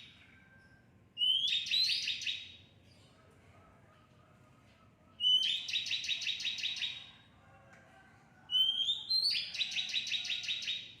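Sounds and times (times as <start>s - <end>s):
songbird singing: 0.0s - 3.2s, 5.2s - 7.2s, 8.5s - 11.0s.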